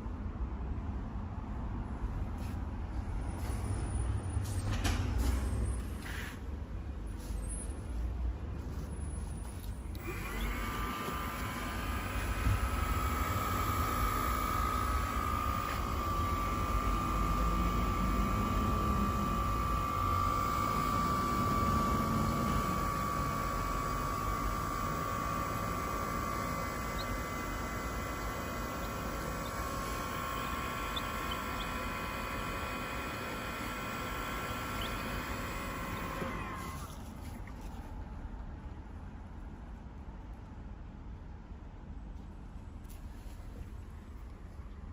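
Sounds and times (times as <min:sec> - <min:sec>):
well pump motor whining: 0:09.4 - 0:37.7.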